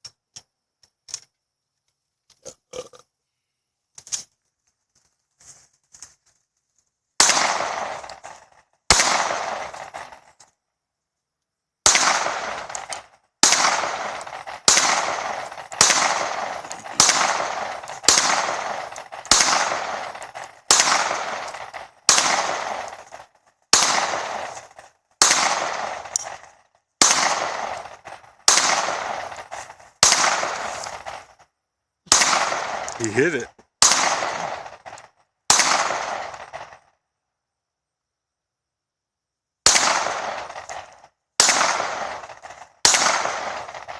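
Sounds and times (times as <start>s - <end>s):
gunshots with echo: 7.2s - 10.4s, 11.8s - 31.4s, 32.1s - 36.9s, 39.6s - 43.9s.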